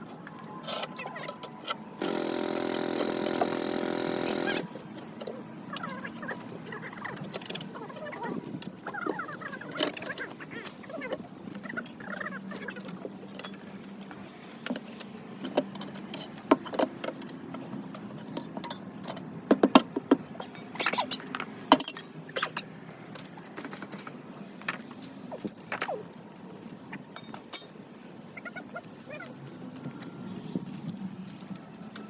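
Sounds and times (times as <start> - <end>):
metal tools clinking on a tyre rim: 21.7 - 22.6, 27.1 - 27.8.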